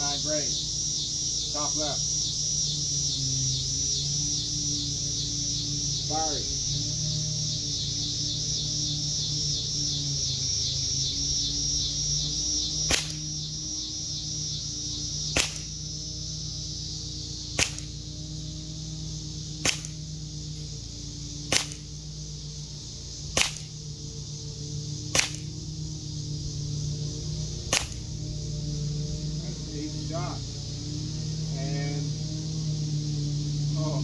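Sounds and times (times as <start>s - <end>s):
air pistol shots popping: 12.8s - 13.3s, 15.3s - 15.8s, 17.5s - 18.0s, 19.6s - 20.0s, 21.4s - 22.0s, 23.3s - 23.8s, 25.1s - 25.5s, 27.7s - 28.1s.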